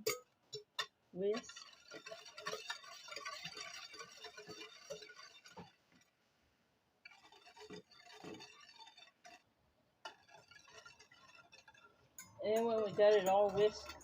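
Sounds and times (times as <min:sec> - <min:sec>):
whisk clicking against bowl: 0:00.1 - 0:05.8, 0:10.0 - 0:14.0.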